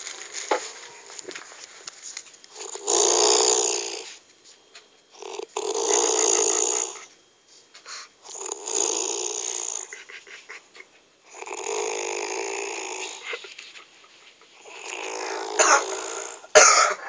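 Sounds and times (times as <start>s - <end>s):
quiet breaths: 0.0s - 16.4s
woman snoring: 2.6s - 4.1s, 5.2s - 7.0s, 8.3s - 9.9s, 11.3s - 13.3s, 14.6s - 16.6s.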